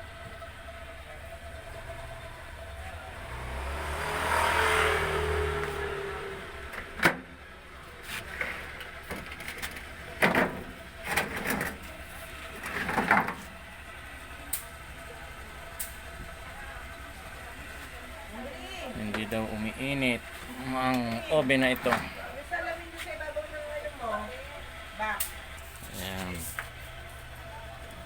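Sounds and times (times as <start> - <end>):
motor vehicle passing: 2.0 - 7.0
clatter of objects being handled: 8.1 - 12.0.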